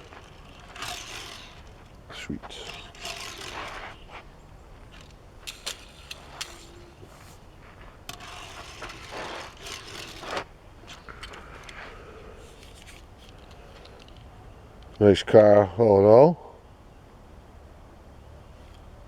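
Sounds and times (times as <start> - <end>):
toy car wheels rolling and scraping: 0.0 - 15.0.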